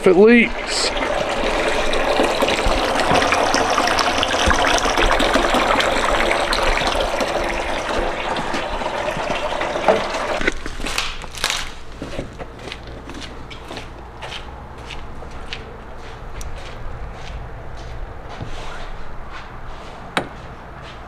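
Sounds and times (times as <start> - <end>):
water gushing into container: 0.0 - 11.8.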